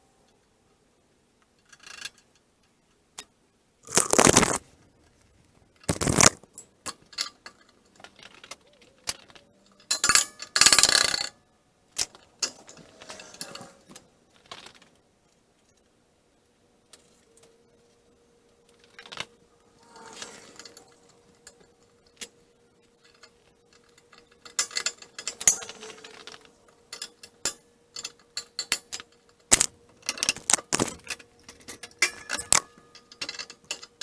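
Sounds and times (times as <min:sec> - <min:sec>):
metal tools clinking: 0:05.9 - 0:06.5, 0:23.1 - 0:33.6.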